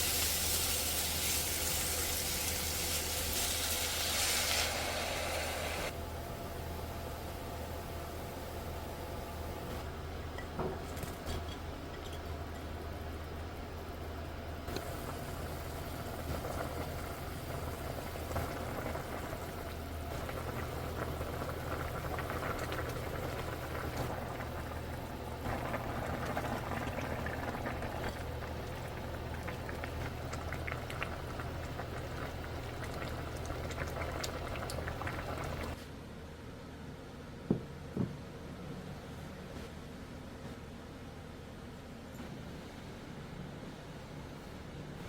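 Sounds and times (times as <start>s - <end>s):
low steady hum: 0.0s - 45.0s
stew bubbling at a boil: 14.7s - 35.8s.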